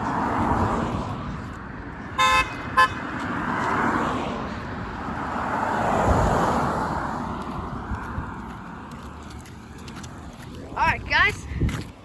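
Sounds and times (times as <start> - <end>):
traffic passing by: 0.0 - 12.0
car horn honking: 2.2 - 3.1.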